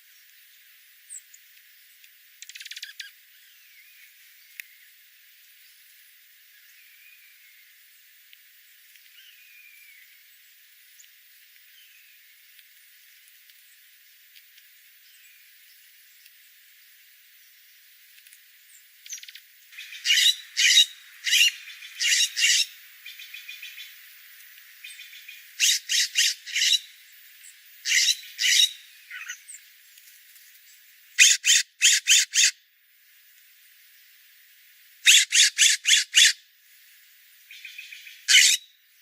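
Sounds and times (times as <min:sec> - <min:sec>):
small birds chirping harshly: 0:02.4 - 0:04.9, 0:18.6 - 0:24.0, 0:24.8 - 0:29.8, 0:30.6 - 0:32.6, 0:35.0 - 0:36.4, 0:37.4 - 0:39.0.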